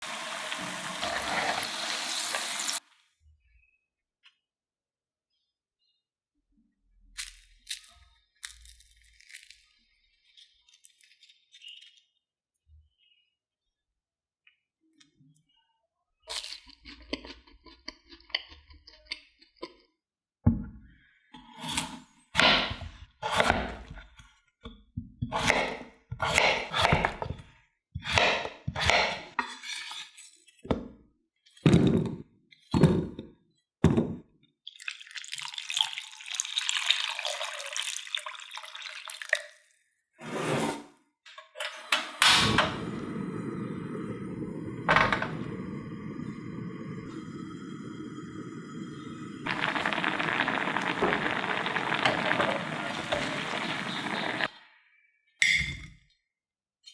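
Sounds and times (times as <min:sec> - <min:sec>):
water running: 0:00.0 - 0:02.8, 0:34.8 - 0:39.4, 0:42.5 - 0:54.5
potatoes knocking and splashing: 0:34.7 - 0:39.7, 0:49.5 - 0:54.5.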